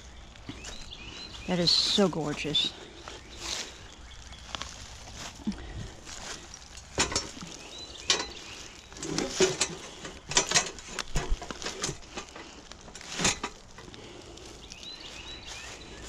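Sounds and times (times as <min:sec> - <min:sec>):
faint birds chirping: 0:00.0 - 0:16.0.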